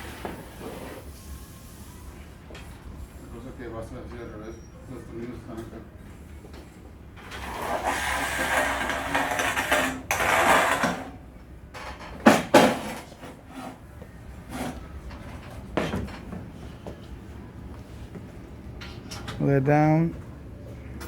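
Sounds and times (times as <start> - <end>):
metal frame scraping: 7.3 - 11.1.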